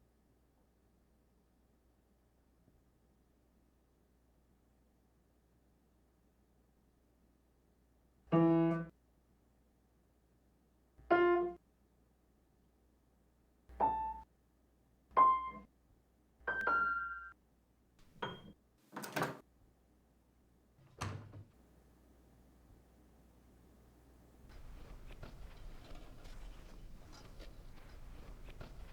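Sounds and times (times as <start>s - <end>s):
piano notes: 8.3s - 8.9s, 11.1s - 11.6s, 13.8s - 14.2s, 15.2s - 15.6s, 16.5s - 17.3s.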